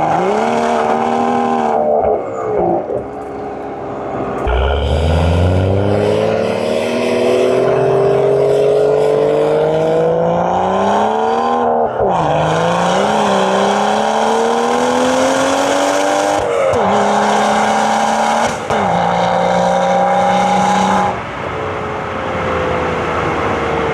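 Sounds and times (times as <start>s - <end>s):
car engine accelerating through gears: 4.1s - 21.2s.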